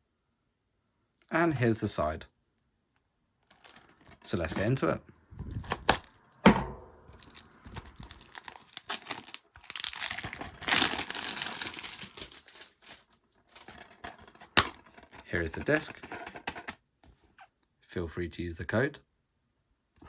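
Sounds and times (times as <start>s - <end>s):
plastic wrap tearing and crinkling: 3.6s - 4.7s, 5.4s - 6.2s, 7.2s - 15.0s.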